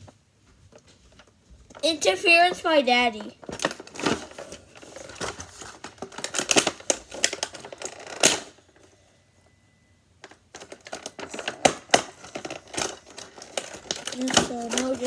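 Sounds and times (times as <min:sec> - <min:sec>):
packaging clicking and rattling: 0:03.2 - 0:08.6, 0:10.2 - 0:15.0.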